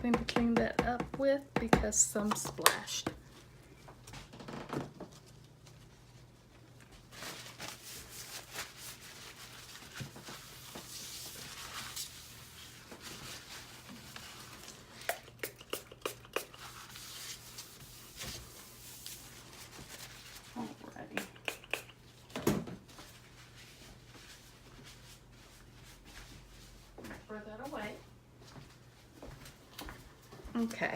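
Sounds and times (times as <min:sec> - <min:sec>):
rustling and wiping: 0:05.1 - 0:15.1, 0:16.5 - 0:20.8, 0:22.9 - 0:27.2.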